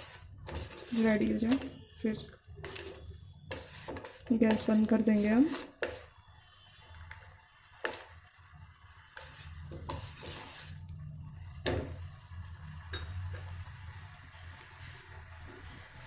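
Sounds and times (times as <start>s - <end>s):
utensil clinking against pot: 0.0s - 1.8s, 2.6s - 6.1s
utensil stirring in a pot: 0.0s - 16.0s.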